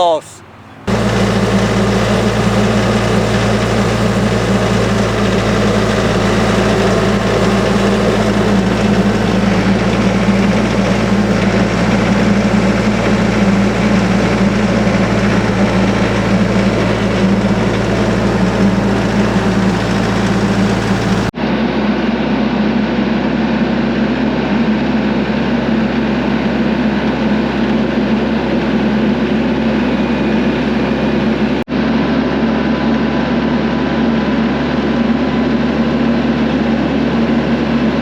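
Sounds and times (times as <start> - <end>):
engine droning: 0.0 - 21.3.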